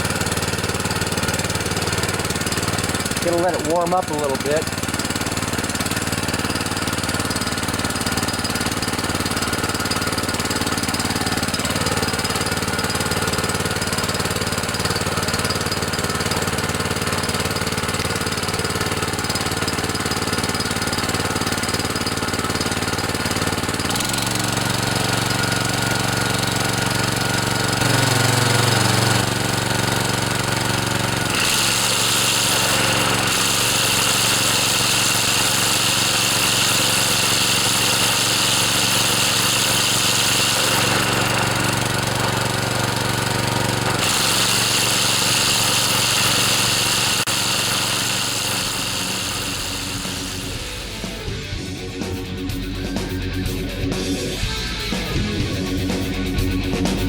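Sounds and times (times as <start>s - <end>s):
string trimmer engine running: 0.0s - 52.0s.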